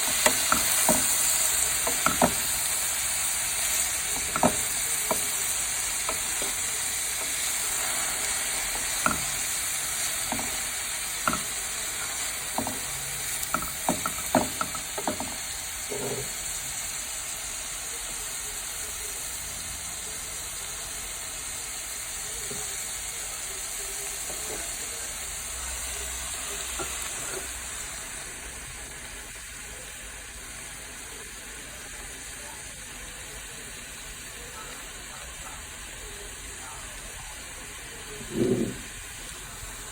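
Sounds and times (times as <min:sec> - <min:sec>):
spatula scraping a pan: 0:00.0 - 0:16.5, 0:26.6 - 0:27.7, 0:38.2 - 0:39.0
vegetables sizzling in a pan: 0:00.0 - 0:39.9.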